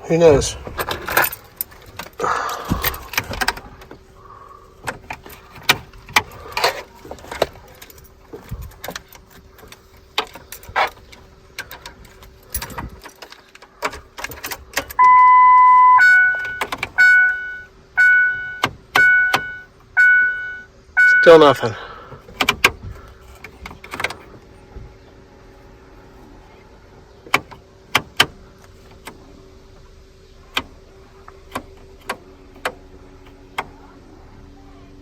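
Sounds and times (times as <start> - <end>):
keys jangling: 0.8 - 2.2, 5.1 - 15.0
electronic warning chime: 15.0 - 21.6.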